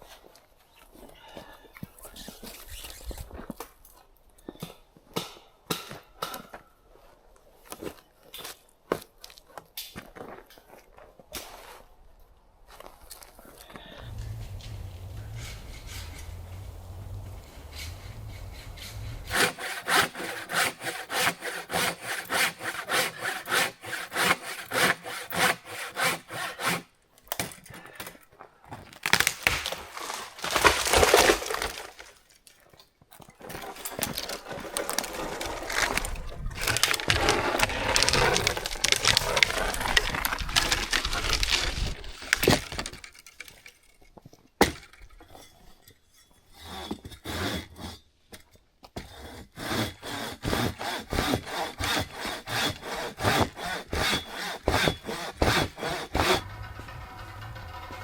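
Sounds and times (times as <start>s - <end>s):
loud wood crack: 14.0s - 20.0s, 28.8s - 32.6s, 33.4s - 45.1s
hand saw cutting wood: 14.0s - 27.0s, 29.9s - 32.1s, 33.4s - 43.6s, 46.6s - 48.0s, 49.0s - 58.0s
rasping and rubbing on wood: 14.1s - 26.8s, 34.0s - 43.0s, 49.1s - 57.8s.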